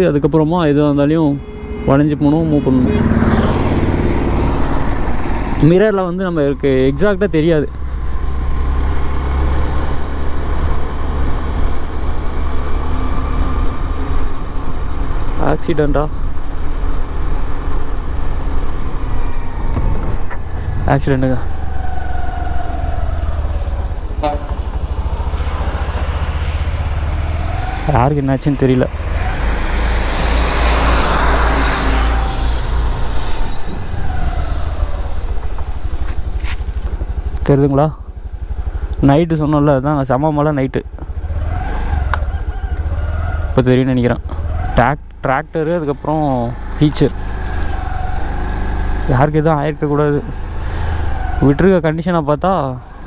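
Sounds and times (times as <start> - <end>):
vehicle engine and road rumble: 0.0 - 53.0
faint falling whine: 0.9 - 5.7.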